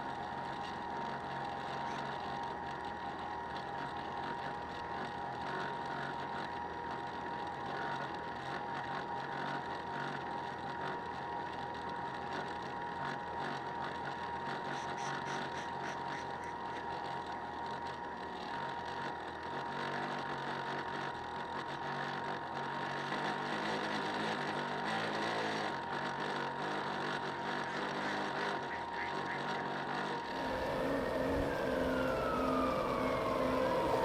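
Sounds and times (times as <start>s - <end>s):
electric motor whining: 29.7s - 34.0s
falling tone: 30.2s - 34.0s.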